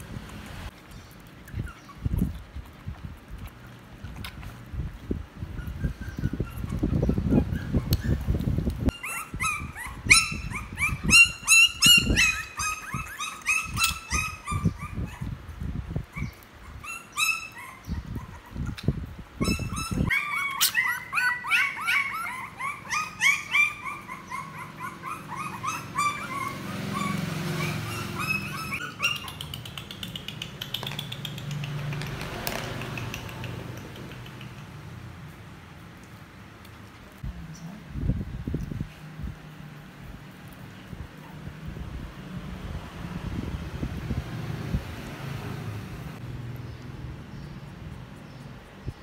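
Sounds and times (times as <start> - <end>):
puppies whimpering and yipping: 1.4 - 2.2, 5.4 - 15.4, 16.0 - 29.7.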